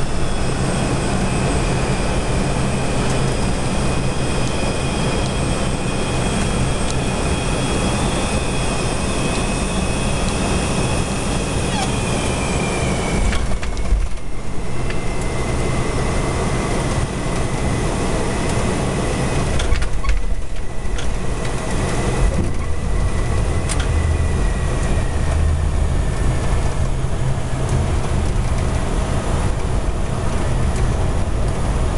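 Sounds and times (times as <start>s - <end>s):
airflow and engine roar: 0.0s - 31.9s
low rumble: 0.0s - 31.9s.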